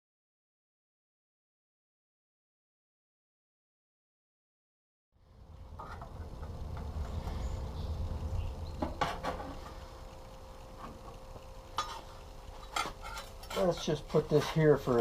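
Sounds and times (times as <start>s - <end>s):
faint steady hum: 5.2s - 15.0s
low steady rumble: 5.2s - 15.0s.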